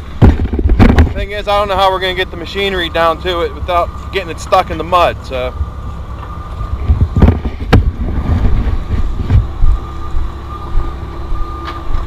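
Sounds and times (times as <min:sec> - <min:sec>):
wind buffeting microphone: 0:00.0 - 0:01.7, 0:05.5 - 0:12.0
construction machinery rumbling: 0:00.0 - 0:12.0
sharp knocks: 0:00.2 - 0:01.2.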